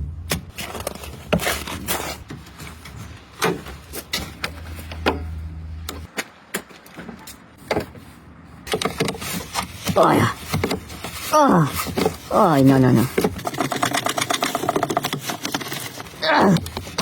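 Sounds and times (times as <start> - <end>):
clicks and knocks of hands working: 13.1 - 17.0.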